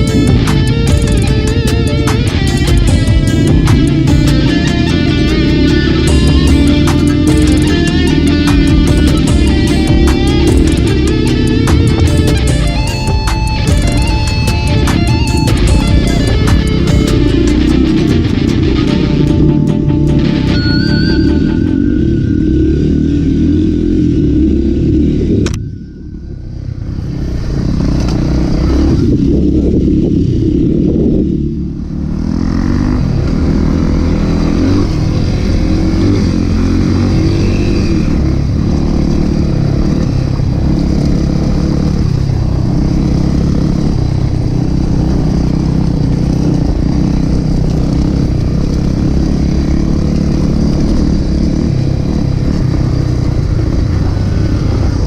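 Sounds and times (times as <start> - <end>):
background music: 0.0 - 23.9
motorcycle engine running: 0.0 - 55.0.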